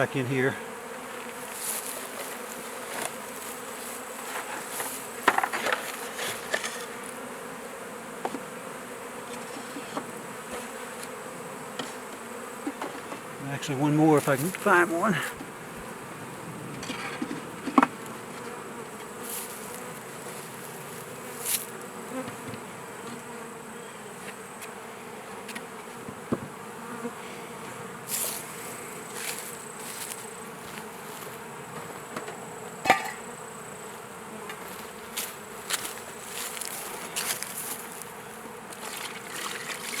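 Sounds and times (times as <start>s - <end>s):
bee swarm buzzing: 0.0s - 40.0s
knocks and clicks of hive equipment: 5.2s - 6.9s.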